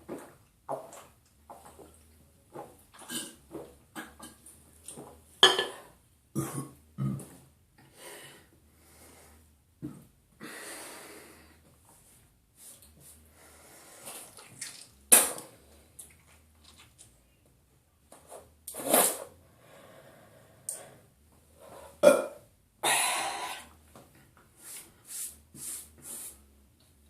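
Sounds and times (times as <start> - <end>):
person burping: 6.4 - 7.4, 22.0 - 23.7
person breathing: 7.8 - 9.6, 10.4 - 11.7, 13.0 - 14.4, 19.4 - 22.0, 22.8 - 23.8.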